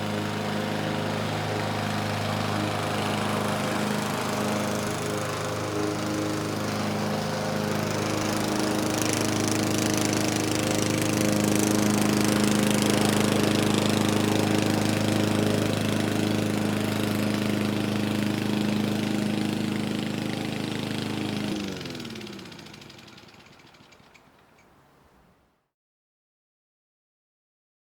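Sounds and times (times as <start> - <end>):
lawn mower engine running: 0.0 - 25.3
lawn mower engine winding down: 0.0 - 25.3.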